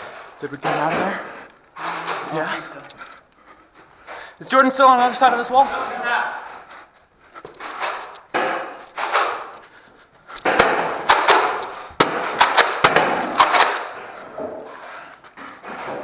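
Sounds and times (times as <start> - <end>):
foam balls smacking surfaces: 7.5 - 9.5, 10.4 - 14.6
toy blasters firing: 10.5 - 13.9.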